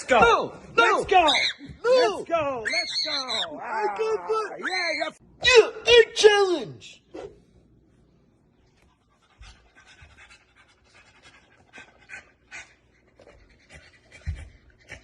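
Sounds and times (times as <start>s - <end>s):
dog panting: 8.7s - 15.0s.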